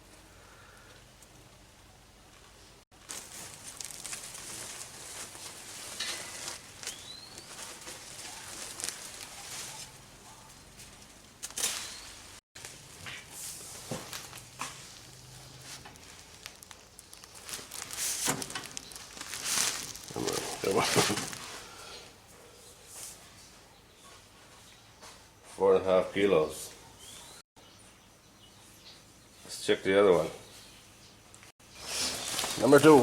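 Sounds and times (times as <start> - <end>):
rustling and crackling of handling: 2.2 - 21.9, 30.4 - 33.0.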